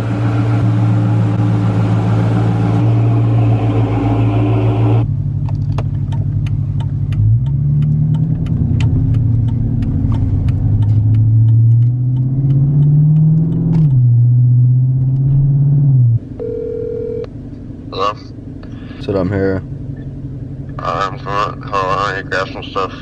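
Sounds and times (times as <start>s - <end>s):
car engine revving: 0.0s - 16.4s.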